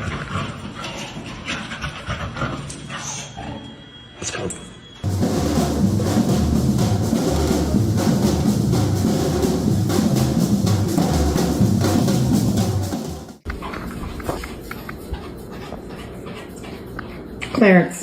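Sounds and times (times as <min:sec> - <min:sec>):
music with drum beat and heavy bass: 0:05.0 - 0:13.4.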